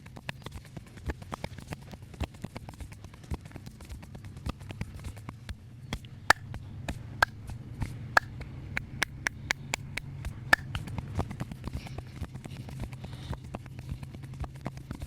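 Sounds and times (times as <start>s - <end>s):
low steady hum: 4.3s - 15.0s
hands slapping on body: 5.9s - 11.0s.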